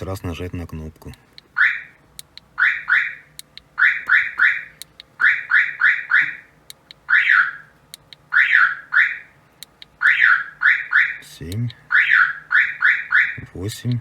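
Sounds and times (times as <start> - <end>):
car alarm siren chirps: 1.5 - 2.0, 2.6 - 9.4, 10.0 - 11.3, 11.9 - 13.5.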